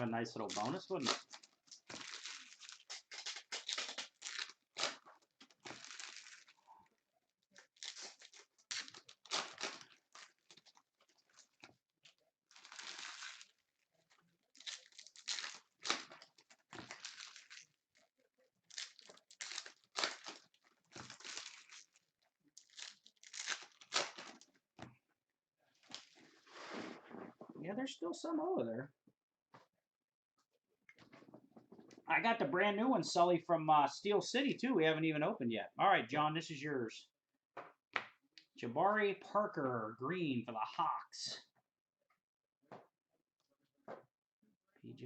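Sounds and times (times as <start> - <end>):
plastic wrappers crinkling and tearing: 0.2 - 6.7, 7.5 - 24.6.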